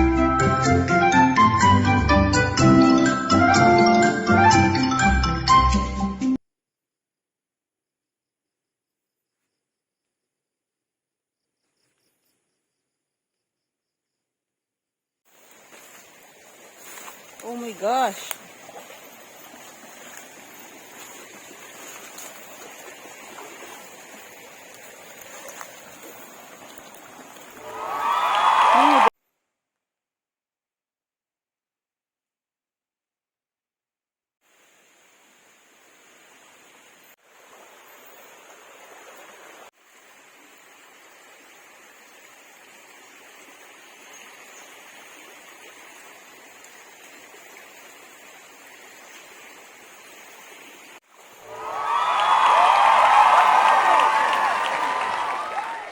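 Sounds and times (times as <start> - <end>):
creek water rushing: 15.3 - 29.1, 34.5 - 55.9.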